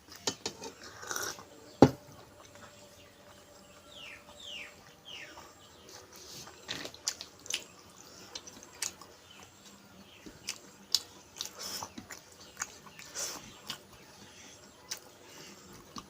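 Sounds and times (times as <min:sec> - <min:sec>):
person chewing food: 0:04.8 - 0:16.0.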